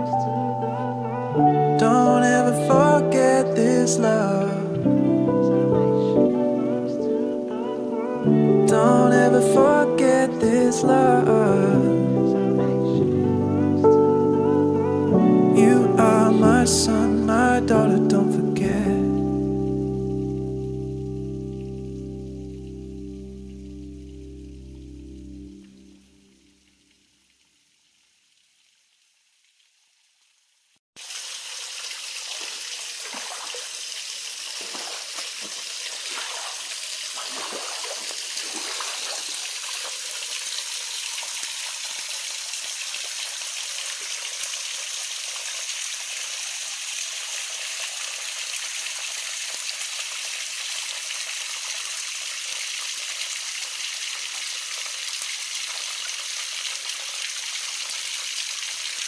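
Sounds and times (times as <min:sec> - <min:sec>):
rushing creek water: 0:31.0 - 0:59.0.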